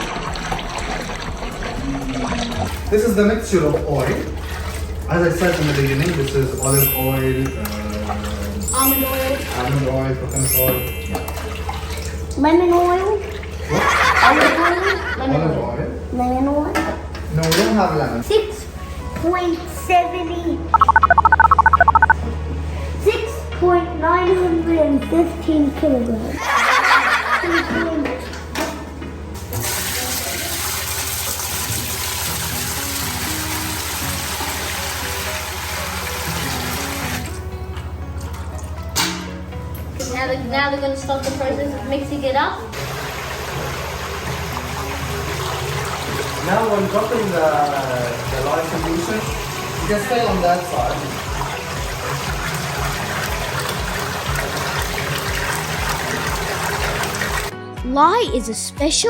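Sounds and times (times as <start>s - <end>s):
liquid pouring: 42.8s - 57.5s
background music: 44.6s - 59.0s.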